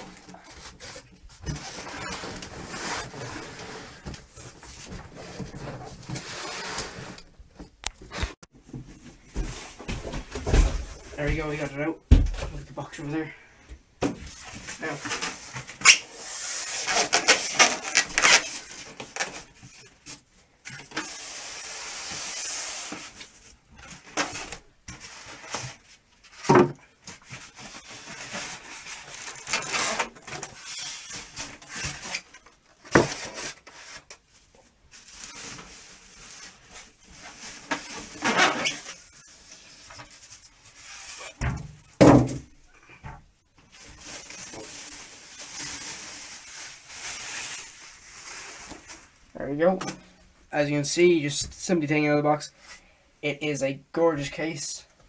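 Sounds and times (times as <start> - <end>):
knocks and thumps of handling: 7.5 - 12.7
packing rustling: 43.6 - 49.2.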